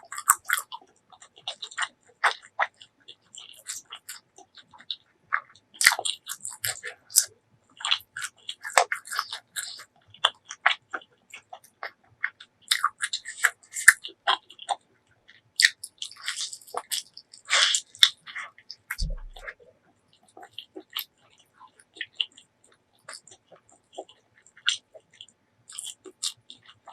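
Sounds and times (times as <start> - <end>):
person biting and chewing: 5.8 - 14.8, 15.6 - 19.6.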